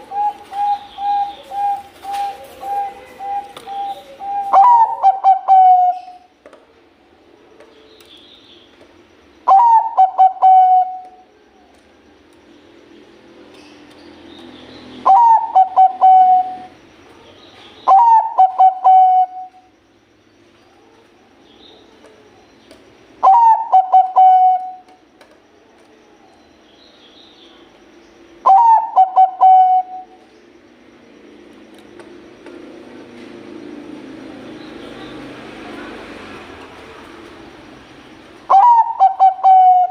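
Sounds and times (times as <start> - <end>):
dove cooing: 0.0 - 6.3, 9.5 - 11.3, 15.0 - 16.8, 17.8 - 19.7, 23.2 - 24.9, 28.4 - 30.3, 38.5 - 39.9.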